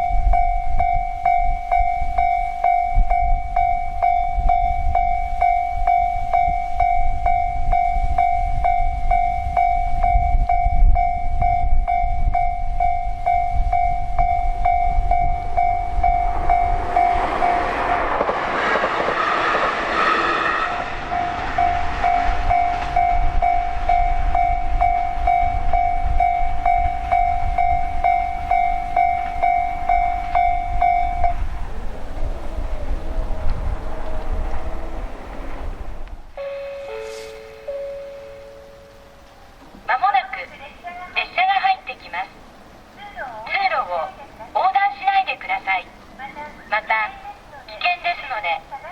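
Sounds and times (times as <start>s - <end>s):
level crossing bell ringing: 0.0s - 17.9s, 20.8s - 31.5s, 36.4s - 39.6s
train passing: 0.0s - 48.9s.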